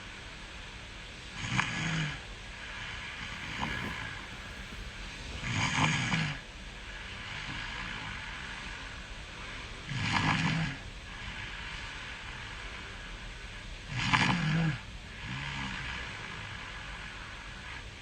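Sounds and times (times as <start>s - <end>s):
soft breathing: 3.1s - 6.2s
person snoring: 3.2s - 5.8s.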